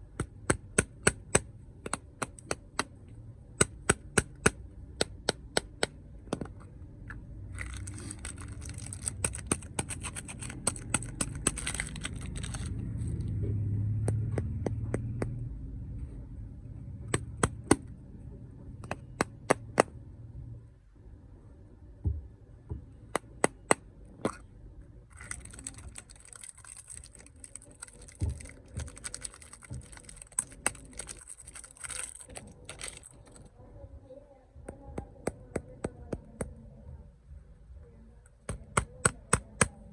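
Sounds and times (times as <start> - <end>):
sharp taps and clicks: 0.2 - 2.9, 18.8 - 19.9
plastic wrappers crinkling: 7.5 - 13.3, 25.1 - 33.5.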